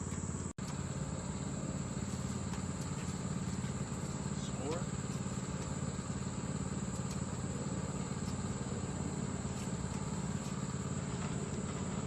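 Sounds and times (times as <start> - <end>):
engine idling drone: 0.0 - 12.0.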